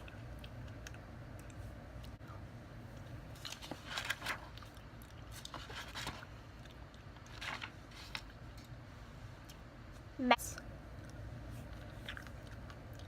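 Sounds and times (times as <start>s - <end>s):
person chewing wetly: 0.0s - 2.2s, 4.5s - 5.6s, 10.9s - 13.0s.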